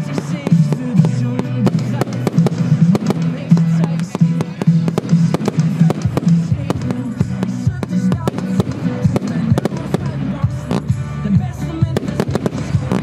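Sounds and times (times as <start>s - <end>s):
firework bangs and crackles: 0.0s - 13.0s
music: 0.0s - 13.0s
voices: 0.0s - 13.0s.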